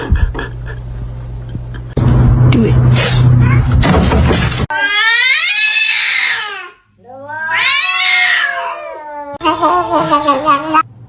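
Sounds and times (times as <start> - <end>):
cat yowling: 4.7 - 10.8.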